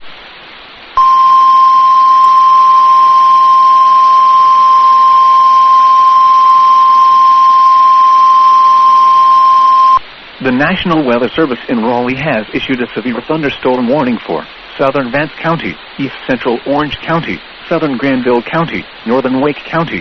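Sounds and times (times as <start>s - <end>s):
steady alarm tone: 1.0s - 10.0s.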